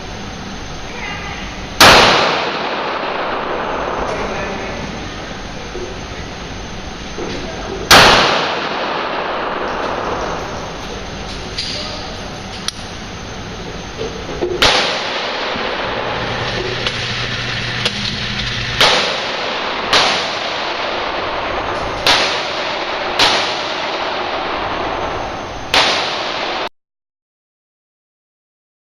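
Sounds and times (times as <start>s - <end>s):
pistol shots: 1.8s - 4.0s, 7.9s - 10.2s, 14.6s - 16.1s, 18.8s - 25.0s, 25.7s - 26.7s.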